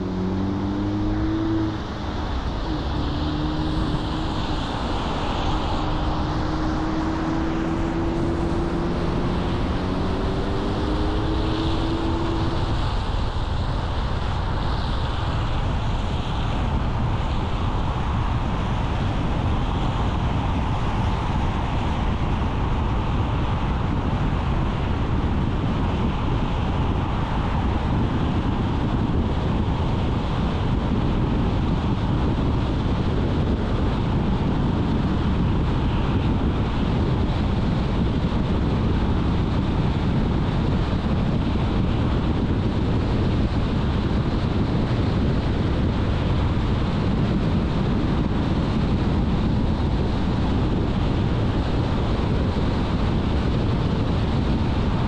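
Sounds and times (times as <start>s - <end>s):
car engine rising in pitch: 0.0s - 13.4s
road and wind noise: 0.0s - 55.0s.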